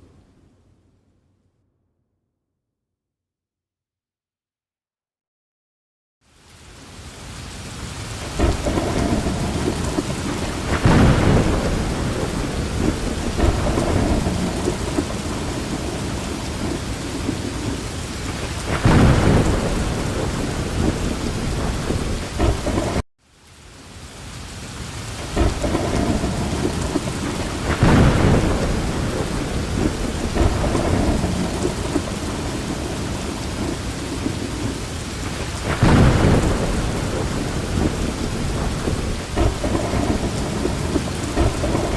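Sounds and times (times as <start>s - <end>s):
heavy rain falling: 6.2s - 41.9s
thunder rumbling: 8.2s - 23.0s, 25.1s - 41.9s.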